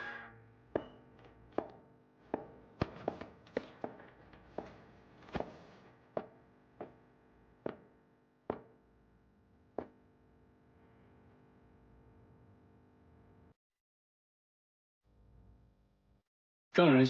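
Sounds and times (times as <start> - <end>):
footsteps on hard floor: 1.6 - 7.0, 7.6 - 7.9.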